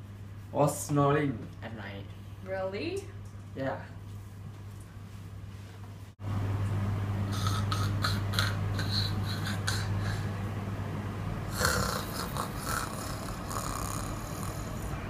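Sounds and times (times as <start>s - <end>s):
person snoring: 7.3s - 10.3s, 11.5s - 15.0s.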